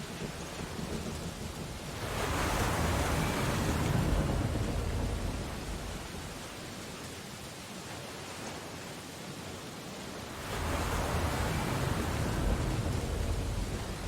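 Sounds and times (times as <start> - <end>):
ocean wave surging: 0.0 - 7.0, 10.2 - 14.0
sea wash: 0.0 - 14.0.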